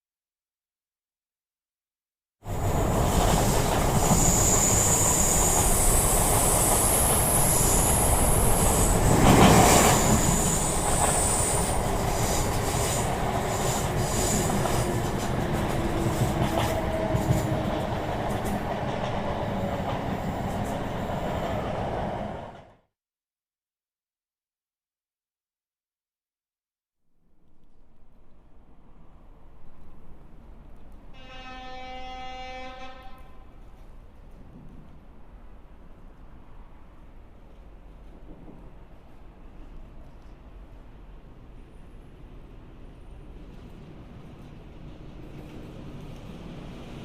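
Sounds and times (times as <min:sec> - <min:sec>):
train wheels rumbling on rails: 0:02.4 - 0:22.7, 0:33.2 - 0:47.0.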